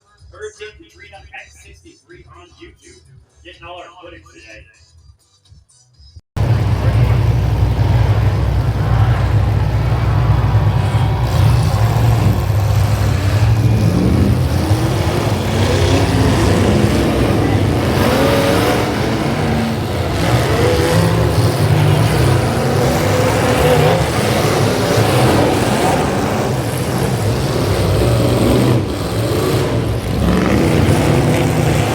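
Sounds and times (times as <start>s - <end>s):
car engines revving: 6.4s - 31.9s.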